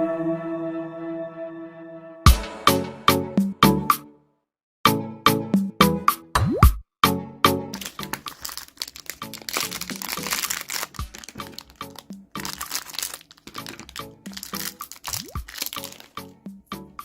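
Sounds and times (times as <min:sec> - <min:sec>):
background music: 0:00.0 - 0:04.2, 0:04.9 - 0:17.0
plastic packaging crackling: 0:07.7 - 0:17.0.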